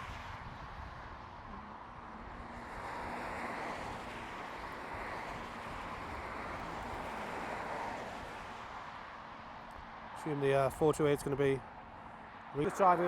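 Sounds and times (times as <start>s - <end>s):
road traffic noise: 0.0s - 13.0s.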